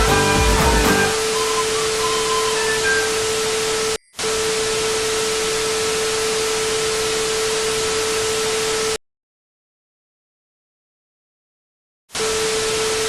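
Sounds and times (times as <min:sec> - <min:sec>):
loud static hiss: 0:00.0 - 0:09.0.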